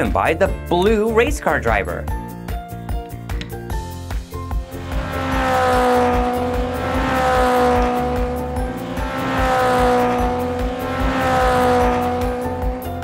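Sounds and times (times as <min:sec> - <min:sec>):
music with steady beat: 0:02.1 - 0:13.0
race car engine whine passing: 0:04.4 - 0:13.0.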